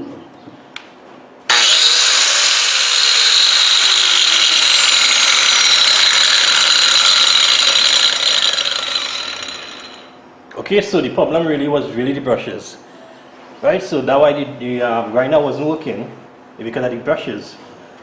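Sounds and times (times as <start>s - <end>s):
angle grinder whining: 1.5s - 10.2s.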